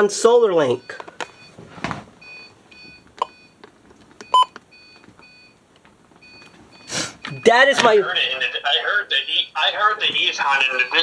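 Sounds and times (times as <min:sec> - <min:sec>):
faint high-pitched radio beeps: 0:00.6 - 0:01.5, 0:06.2 - 0:11.0.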